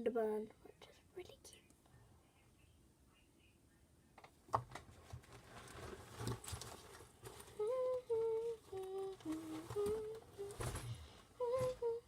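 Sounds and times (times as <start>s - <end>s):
girl humming a tune: 7.4s - 12.0s.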